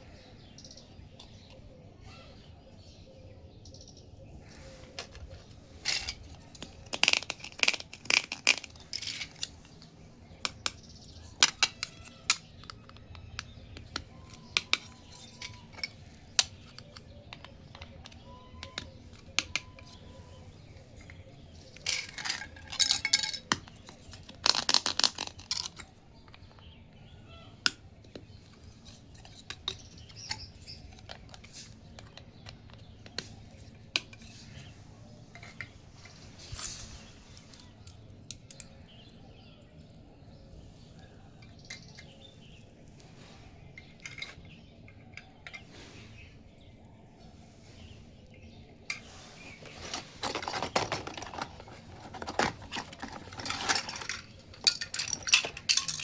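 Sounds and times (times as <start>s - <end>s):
rattling clatter of toy pieces: 4.7s - 13.2s, 13.8s - 20.4s, 21.0s - 26.4s, 48.9s - 56.0s
plastic toy pieces tapping and clinking: 5.0s - 26.7s, 27.6s - 34.7s, 48.9s - 56.0s.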